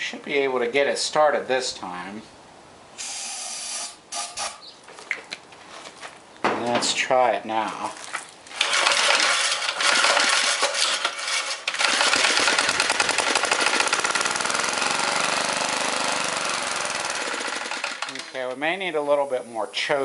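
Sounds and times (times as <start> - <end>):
small engine cranking and running: 8.5 - 18.4.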